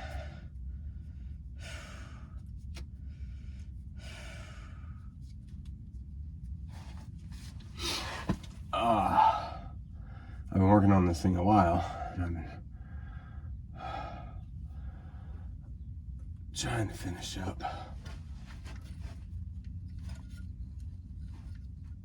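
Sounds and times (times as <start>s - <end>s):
steady low hum: 0.0s - 22.0s
man breathing hard and sighing: 7.8s - 10.5s, 11.9s - 15.6s
man grunting: 8.8s - 9.6s.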